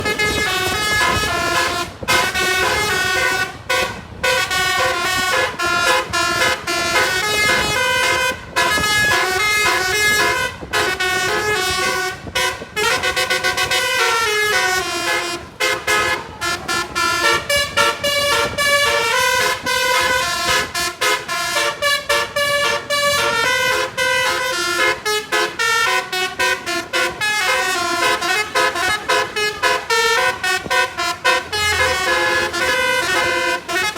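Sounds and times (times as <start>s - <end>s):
multi-tone bus horn playing a tune: 0.0s - 33.9s.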